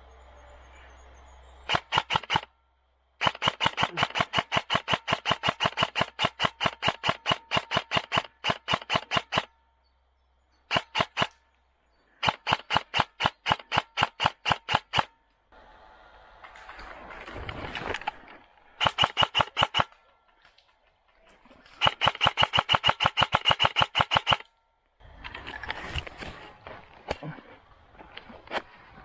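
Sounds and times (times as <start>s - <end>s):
airsoft rifle rapid fire: 1.7s - 2.5s, 3.2s - 9.5s, 10.7s - 11.4s, 12.2s - 15.2s, 18.8s - 20.0s, 21.8s - 24.5s.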